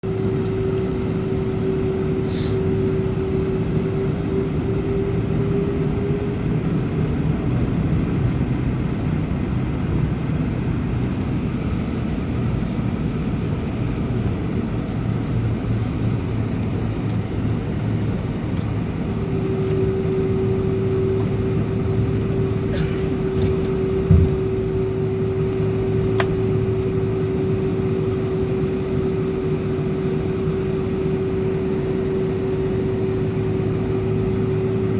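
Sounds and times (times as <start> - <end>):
aircraft cabin engine rumble: 0.0 - 34.9
low thump: 24.1 - 24.6.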